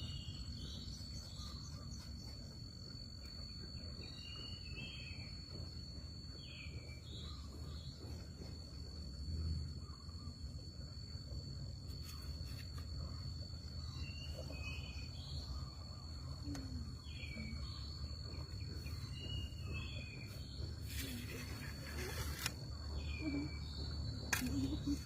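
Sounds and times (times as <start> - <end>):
high-pitched insect drone: 0.0 - 25.0
bird chirps: 3.2 - 5.7, 12.0 - 25.0.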